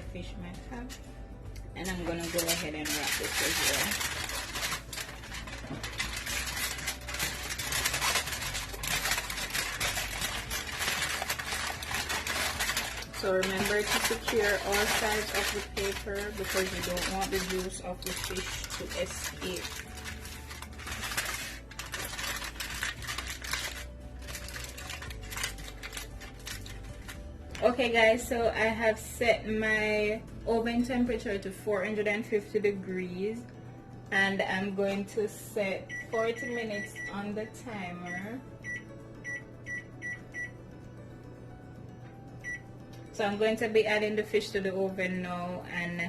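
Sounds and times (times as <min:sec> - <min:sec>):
aluminium foil crinkling: 0:01.8 - 0:27.8.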